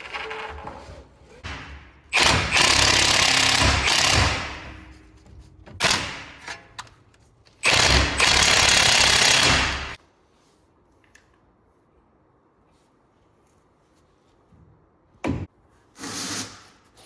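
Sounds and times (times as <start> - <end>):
impact wrench hammering: 1.4 - 5.1, 7.6 - 10.0.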